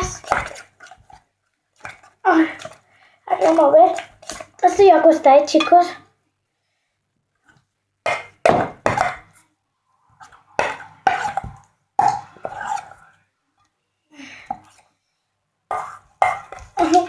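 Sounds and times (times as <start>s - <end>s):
utensil knocking and scraping container: 10.6s - 12.9s.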